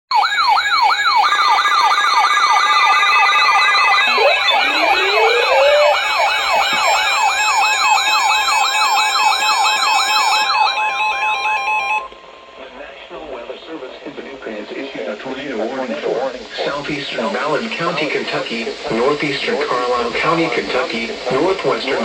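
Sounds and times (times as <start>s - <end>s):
fast yelping electronic siren: 0.1s - 12.1s
steady alarm tones: 0.2s - 12.5s
rising siren sweep: 0.8s - 12.1s.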